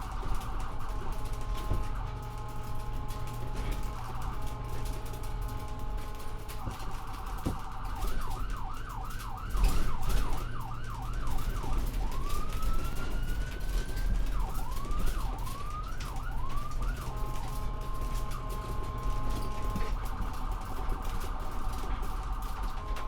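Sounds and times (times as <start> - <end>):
ambulance siren: 0.0 - 23.0.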